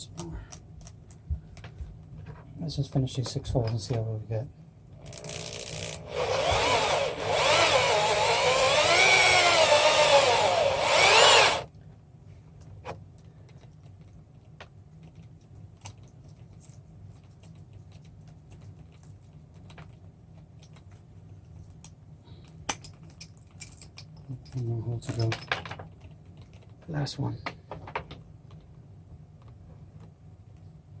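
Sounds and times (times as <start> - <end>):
electric drill boring plexiglass: 5.0 - 11.7.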